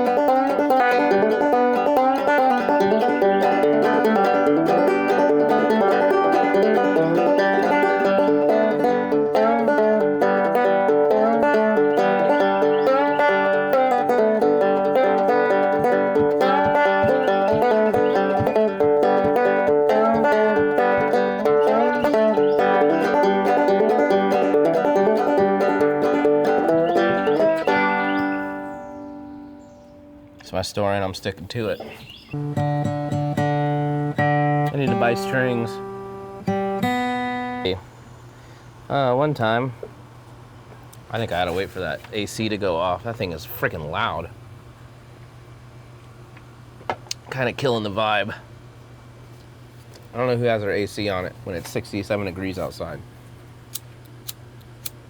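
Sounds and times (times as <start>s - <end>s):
banjo picking: 0.0s - 30.2s, 32.4s - 37.8s.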